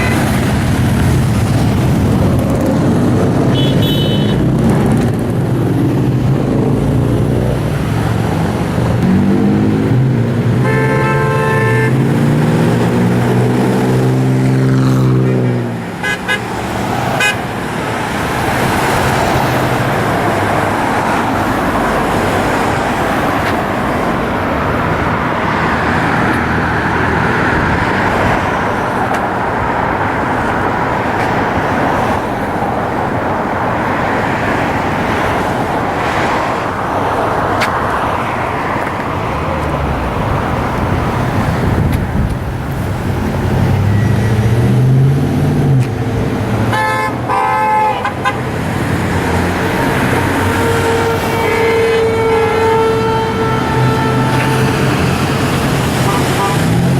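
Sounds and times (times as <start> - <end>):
car horns honking: 0.0 - 0.9, 3.4 - 4.6, 10.4 - 17.9, 46.6 - 56.9
heavy freeway traffic roar: 0.0 - 56.9.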